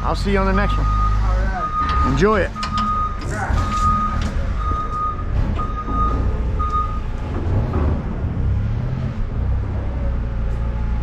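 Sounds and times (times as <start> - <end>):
diesel engine rumbling: 0.0 - 11.0
vehicle reversing alarm beeping: 0.4 - 7.1.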